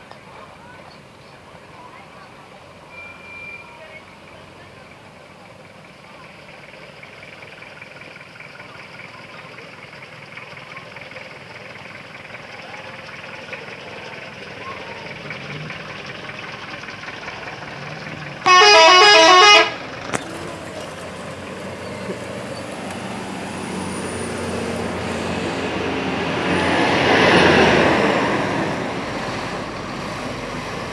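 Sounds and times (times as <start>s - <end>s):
road noise: 0.0s - 30.9s
vehicle engine: 0.0s - 30.9s
bus musical horn: 18.4s - 20.0s.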